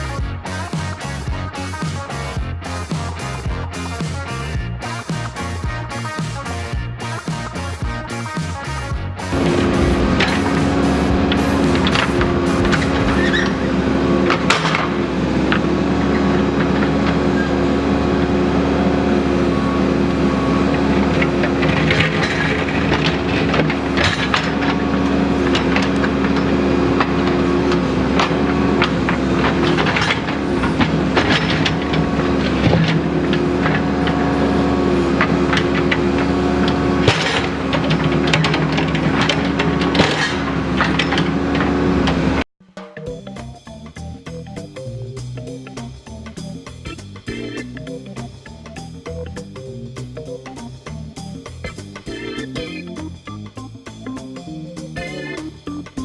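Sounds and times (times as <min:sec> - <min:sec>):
backhoe engine running: 0:09.0 - 0:42.5
bucket scraping gravel and rock: 0:09.3 - 0:42.3.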